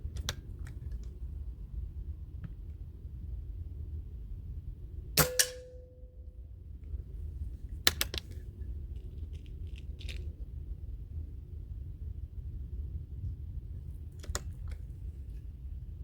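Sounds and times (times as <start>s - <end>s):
sharp metallic clicks: 5.2s - 5.9s
air rifle firing: 5.2s - 6.0s.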